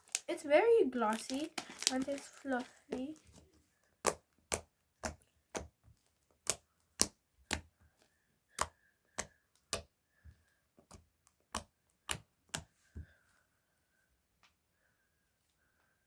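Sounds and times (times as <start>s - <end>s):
slime popping and clicking: 4.0s - 5.8s, 6.4s - 7.7s, 8.5s - 9.9s.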